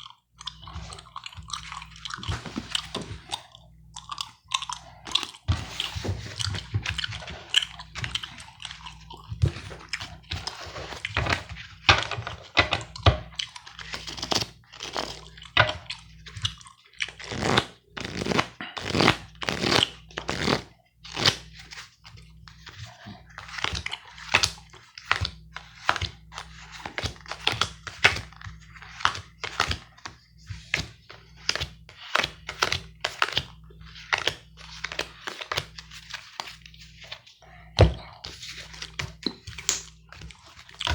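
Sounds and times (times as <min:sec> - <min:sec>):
gum chewing: 0:00.0 - 0:11.2, 0:12.8 - 0:20.6
playing cards being handled: 0:02.2 - 0:03.3, 0:17.2 - 0:21.9, 0:22.5 - 0:40.9.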